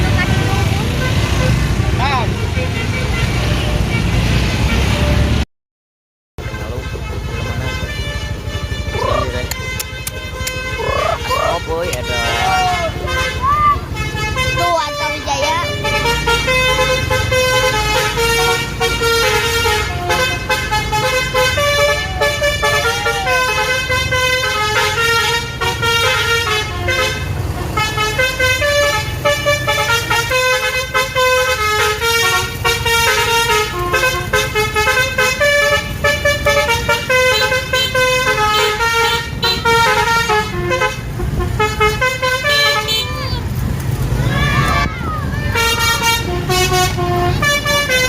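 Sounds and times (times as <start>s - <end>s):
bus musical horn playing a tune: 0.0s - 5.4s, 6.4s - 43.5s, 44.2s - 48.0s.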